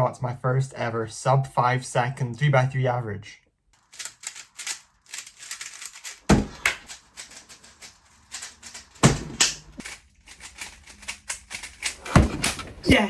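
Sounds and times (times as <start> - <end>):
puzzle cube clicking: 3.8 - 7.8.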